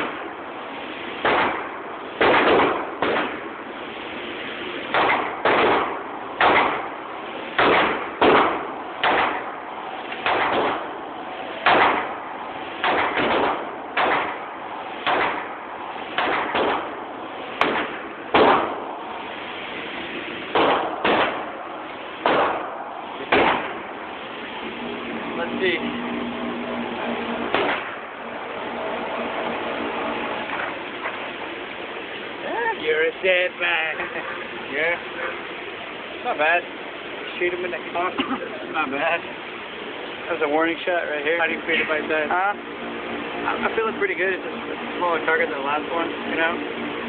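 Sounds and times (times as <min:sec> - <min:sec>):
gunshots: 0:01.2 - 0:03.5, 0:04.9 - 0:06.9, 0:07.5 - 0:10.9, 0:11.6 - 0:12.2, 0:12.8 - 0:19.0, 0:20.2 - 0:23.9, 0:27.4 - 0:28.0.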